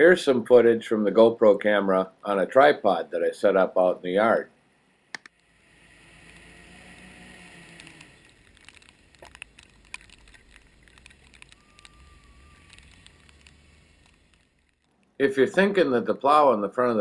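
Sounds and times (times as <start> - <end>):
small ticks and clicks: 5.1 - 15.2.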